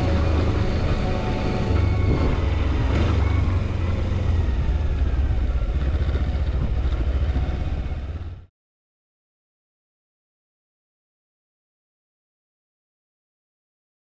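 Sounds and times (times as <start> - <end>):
vehicle engine rumbling: 0.0 - 8.5.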